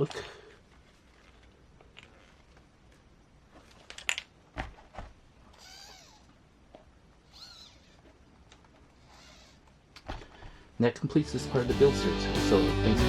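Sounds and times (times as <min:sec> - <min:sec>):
cat meowing: 0:05.6 - 0:06.3, 0:07.3 - 0:08.0, 0:09.1 - 0:09.6.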